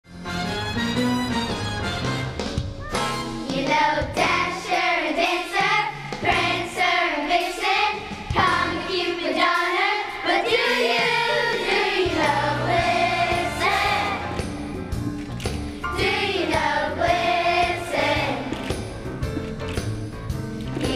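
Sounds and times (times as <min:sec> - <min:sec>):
instrumental accompaniment: 0:00.1 - 0:04.8
children's choir singing: 0:03.5 - 0:14.5, 0:15.9 - 0:18.8.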